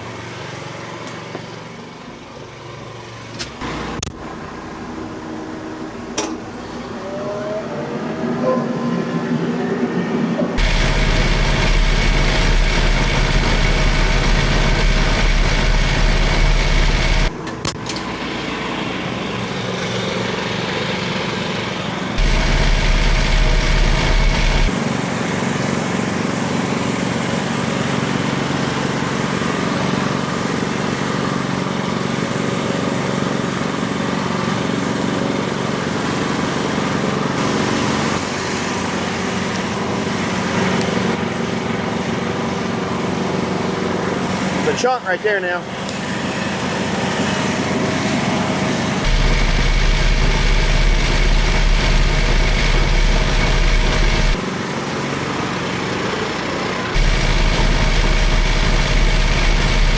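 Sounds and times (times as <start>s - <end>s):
band sawmill cutting log: 10.6s - 17.4s, 18.0s - 44.7s, 45.7s - 59.9s
deep rumble: 49.0s - 54.4s.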